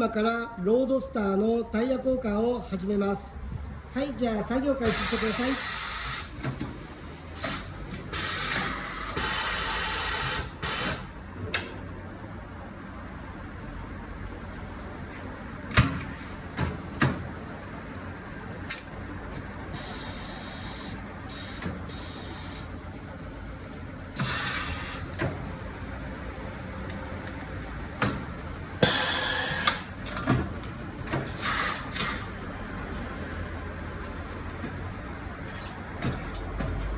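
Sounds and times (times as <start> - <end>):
compressed air hiss: 4.9 - 11.1, 31.4 - 32.3.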